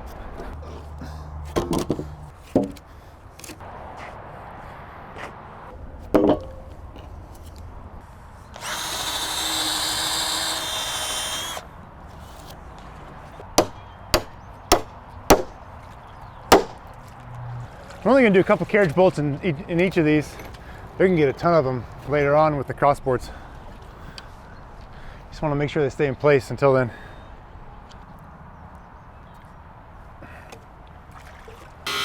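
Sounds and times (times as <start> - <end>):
power tool working wood: 8.6 - 11.6
knocks on wood: 13.6 - 15.6, 16.5 - 16.8
sharp hammer-like knocks: 13.6 - 15.6, 16.5 - 16.8.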